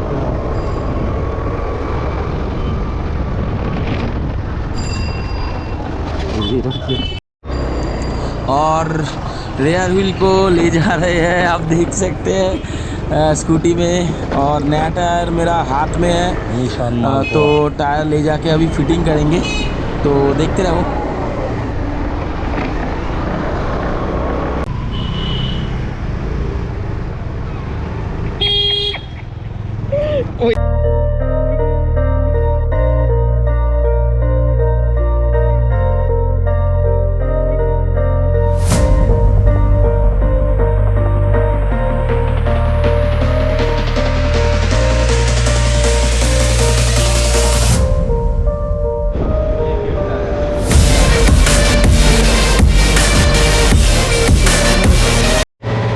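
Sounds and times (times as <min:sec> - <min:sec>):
wind rumbling on microphone: 0:00.0 - 0:06.4
road and traffic noise: 0:00.0 - 0:30.6, 0:38.3 - 0:55.9
vehicle horn honking: 0:06.4 - 0:07.2, 0:24.9 - 0:25.7, 0:28.4 - 0:29.2.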